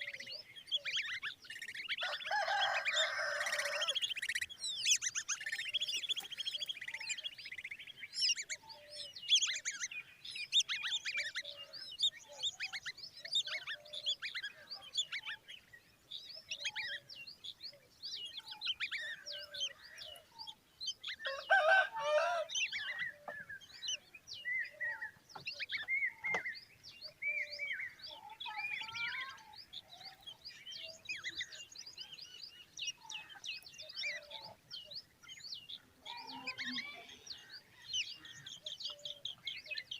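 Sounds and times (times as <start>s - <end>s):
birds chirping and trilling: 0.0s - 39.9s.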